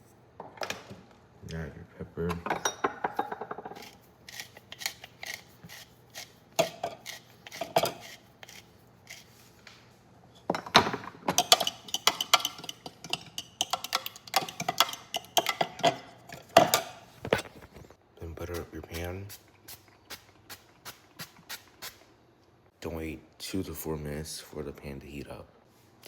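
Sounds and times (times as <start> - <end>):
utensils clinking against a bowl: 10.6 - 17.5.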